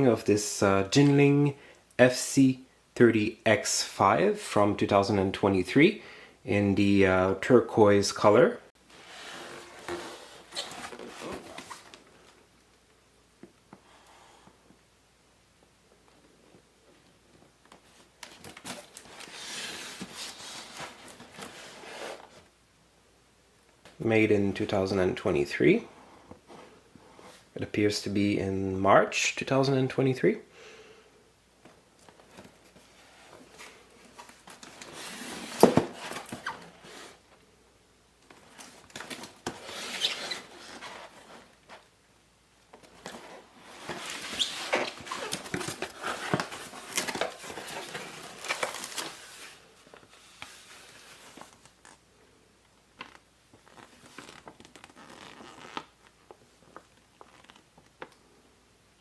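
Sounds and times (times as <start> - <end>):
cardboard rustling and scraping: 8.9 - 12.4, 17.8 - 22.5, 32.0 - 37.2, 38.3 - 41.9, 42.8 - 52.0.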